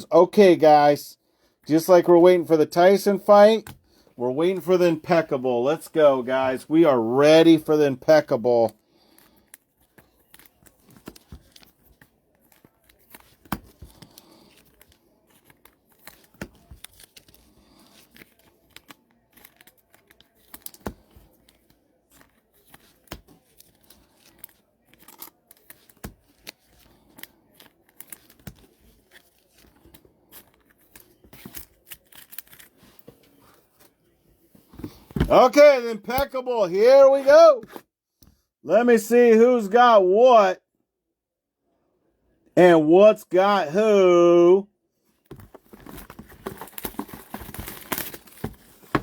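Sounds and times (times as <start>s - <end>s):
handling clicks and scrapes: 45.3s - 49.0s
packaging tearing and crinkling: 45.6s - 49.0s.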